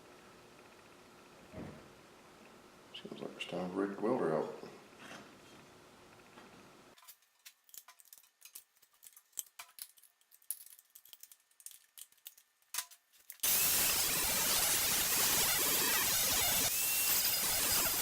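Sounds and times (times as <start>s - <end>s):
metal tools clicking and rattling: 7.0s - 13.4s
loud steady hiss: 13.4s - 18.0s.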